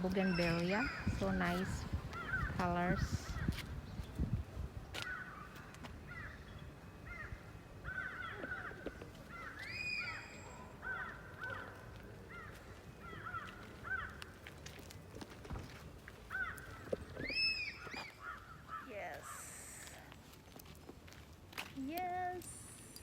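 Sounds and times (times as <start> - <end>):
crows cawing: 5.0 - 6.4, 7.1 - 14.4, 16.3 - 17.2, 18.0 - 19.4.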